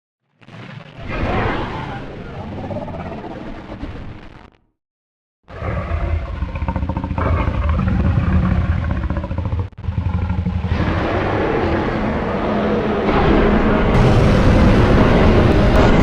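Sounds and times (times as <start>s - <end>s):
synthesized creature roar: 1.0s - 3.5s, 5.5s - 16.0s.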